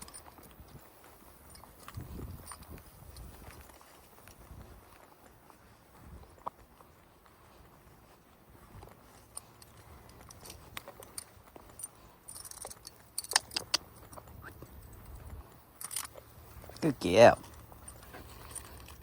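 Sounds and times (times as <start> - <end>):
metal dog tags jingling: 0.0 - 4.0, 9.0 - 19.0.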